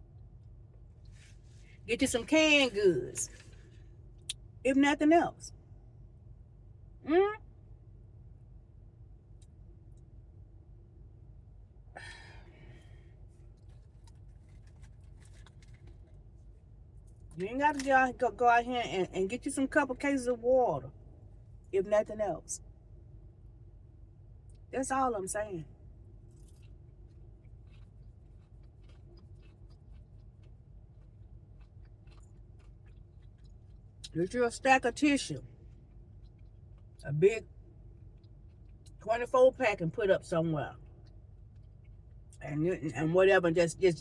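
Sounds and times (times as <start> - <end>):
chewing and handling food: 0.0 - 1.8, 3.1 - 4.5, 12.5 - 17.9, 22.8 - 24.7, 25.7 - 34.3, 35.4 - 39.0, 40.7 - 42.4
low steady hum: 0.0 - 44.0
low steady rumble: 0.0 - 44.0
woman murmuring: 7.0 - 7.4.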